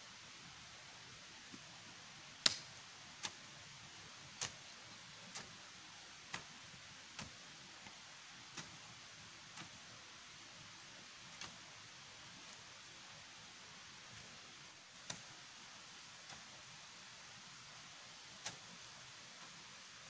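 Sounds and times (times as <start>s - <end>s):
faint steady hiss: 0.0s - 20.0s.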